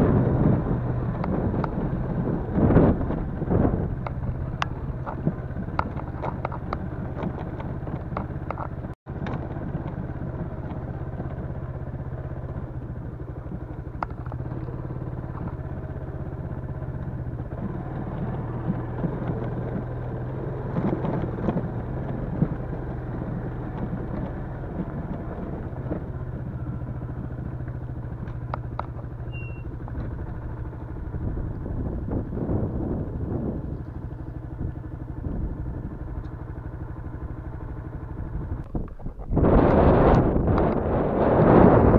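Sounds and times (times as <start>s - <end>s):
motorcycle engine running: 0.0s - 41.9s
clicks and rattles: 4.0s - 10.0s.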